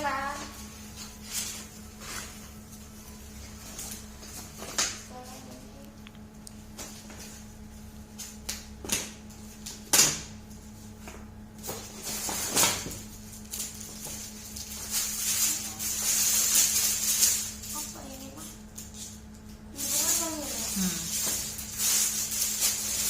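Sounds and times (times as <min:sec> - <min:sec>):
low steady hum: 0:00.0 - 0:23.0
paper rustling: 0:11.7 - 0:18.1, 0:19.8 - 0:23.0
gift wrapping tearing: 0:13.4 - 0:18.0, 0:19.7 - 0:23.0.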